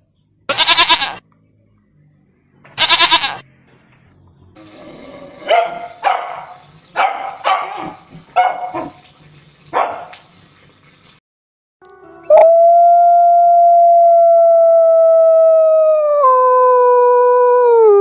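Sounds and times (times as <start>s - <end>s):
dog barking: 5.5s - 9.0s, 9.7s - 10.2s.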